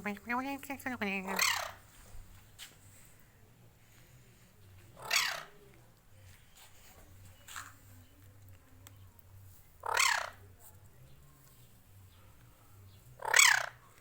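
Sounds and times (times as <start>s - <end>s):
parrot harsh calls: 1.2s - 1.8s, 5.0s - 5.6s, 9.8s - 10.4s, 13.2s - 13.8s.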